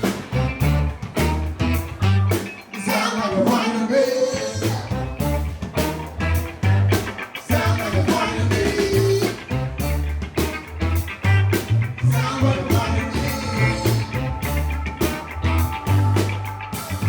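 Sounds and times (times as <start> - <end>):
bass line: 0.0 - 17.0
guitar: 0.0 - 17.0
horns: 0.0 - 17.0.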